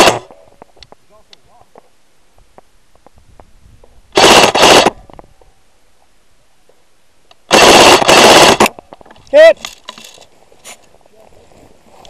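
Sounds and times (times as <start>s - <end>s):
airsoft gun automatic bursts: 0.0s - 0.3s, 4.1s - 5.0s, 7.5s - 8.8s.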